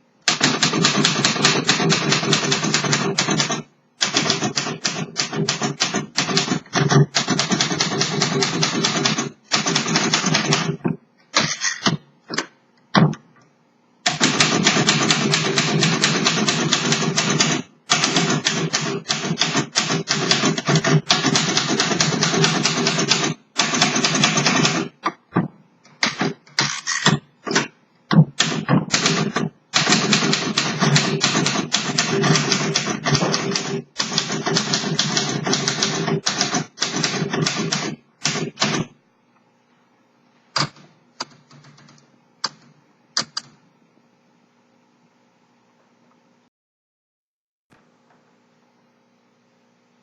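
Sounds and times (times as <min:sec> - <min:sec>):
manual typewriter keystrokes: 0:00.2 - 0:10.8, 0:14.0 - 0:25.2, 0:25.9 - 0:39.0, 0:40.6 - 0:43.5.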